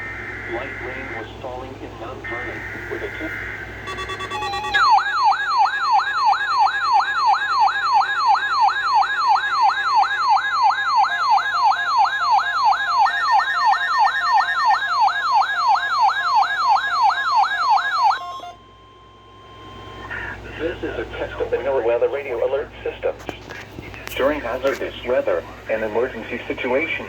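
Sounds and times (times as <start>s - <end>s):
electronic alert siren sweeping: 2.3s - 20.2s.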